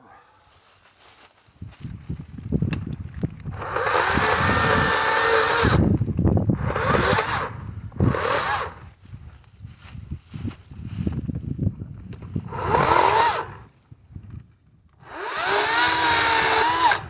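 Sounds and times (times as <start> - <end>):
brush rustling and crackling: 0.1 - 3.7, 8.2 - 14.6
electric chainsaw revving: 3.5 - 6.0, 6.6 - 8.9, 12.4 - 13.7, 15.0 - 17.0.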